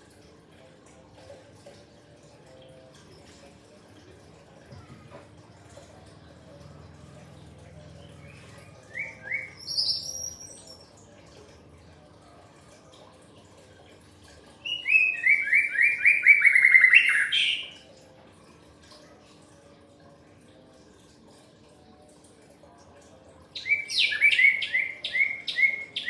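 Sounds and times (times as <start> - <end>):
songbird singing: 7.8 - 11.0, 14.6 - 17.8, 23.6 - 26.0.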